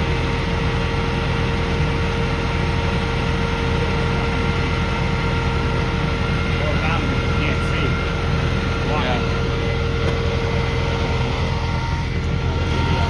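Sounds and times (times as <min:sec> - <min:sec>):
heavy engine idling: 0:00.0 - 0:13.0.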